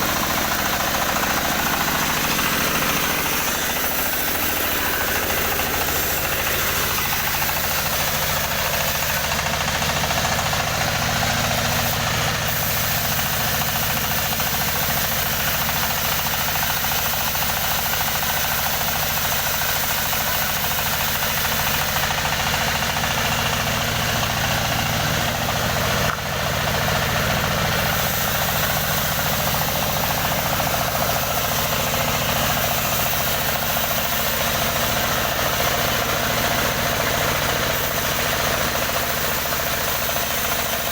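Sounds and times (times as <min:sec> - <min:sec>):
engine-powered wood saw running: 0:00.0 - 0:40.9.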